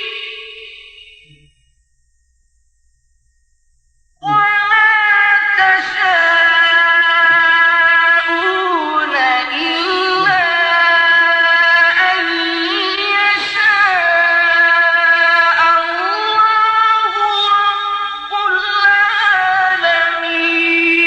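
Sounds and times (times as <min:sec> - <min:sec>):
man reciting melodically: 0:04.2 - 0:21.0.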